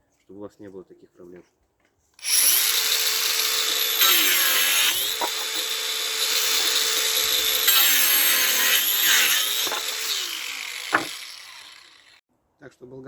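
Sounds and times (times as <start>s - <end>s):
disc cutting through wood hiss: 2.2s - 12.1s
angle grinder motor whine: 2.2s - 12.2s.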